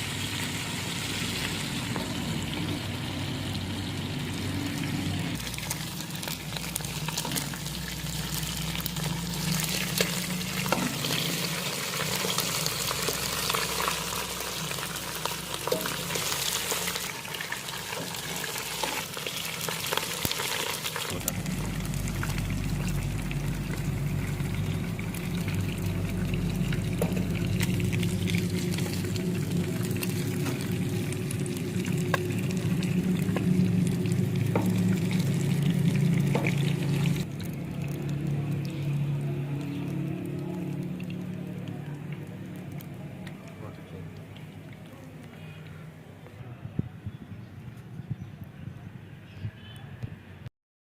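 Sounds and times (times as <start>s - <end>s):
food sizzling in hot oil: 0.0s - 41.5s
steady low hum: 21.1s - 44.2s.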